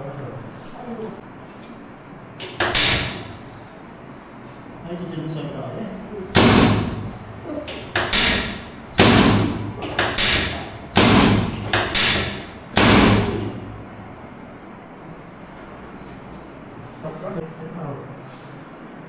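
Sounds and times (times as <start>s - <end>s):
loud ringing thumps: 2.4s - 3.6s, 6.3s - 14.7s.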